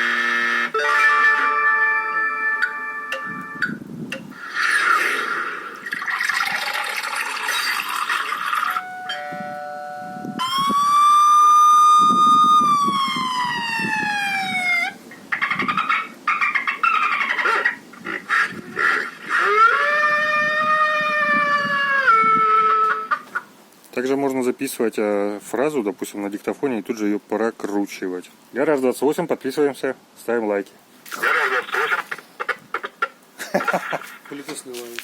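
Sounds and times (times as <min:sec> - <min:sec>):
siren-like electronic tone: 0:10.2 - 0:15.0.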